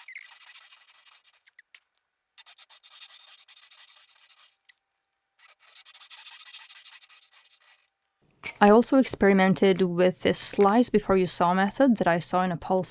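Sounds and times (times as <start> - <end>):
hand tool cutting wood: 0.0 - 1.6, 2.5 - 4.6.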